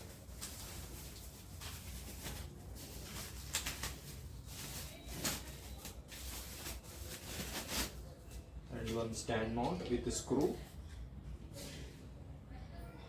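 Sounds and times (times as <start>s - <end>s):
packaging rustling and crinkling: 0.0s - 8.4s.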